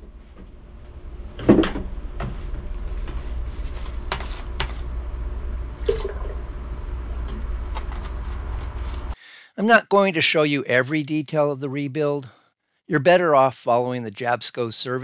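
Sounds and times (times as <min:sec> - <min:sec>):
steady low hum: 0:00.0 - 0:09.2.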